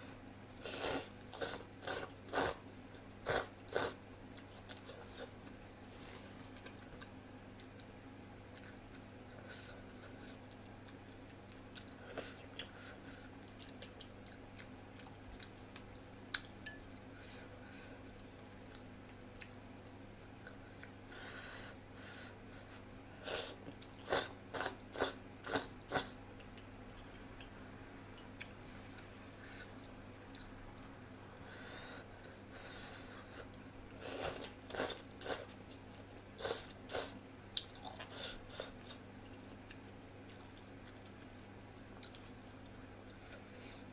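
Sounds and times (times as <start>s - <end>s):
chewing noodles: 0.6s - 17.2s, 23.2s - 30.9s.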